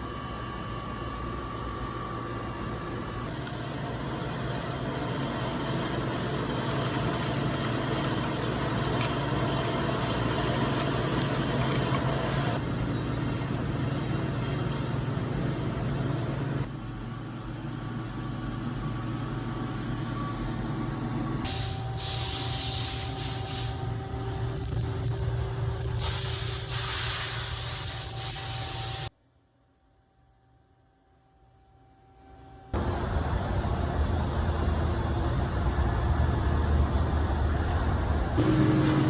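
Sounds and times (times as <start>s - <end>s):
loud hissing bursts: 21.5s - 23.8s, 26.0s - 29.1s
machine humming: 32.7s - 39.0s.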